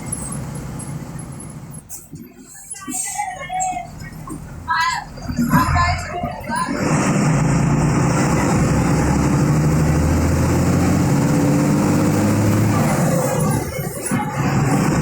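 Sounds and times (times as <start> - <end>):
diesel bus engine droning: 0.0 - 15.0.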